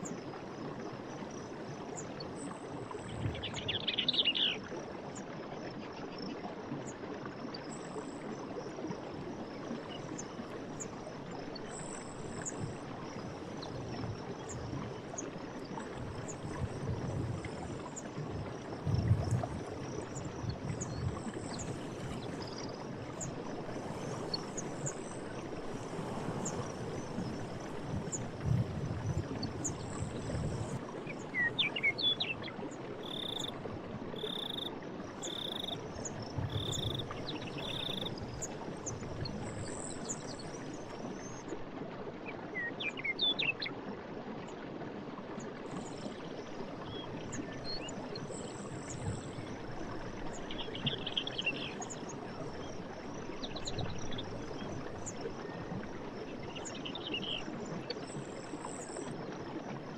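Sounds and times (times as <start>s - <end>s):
insects trilling: 19.2s - 31.6s, 33.0s - 33.5s, 34.2s - 38.5s.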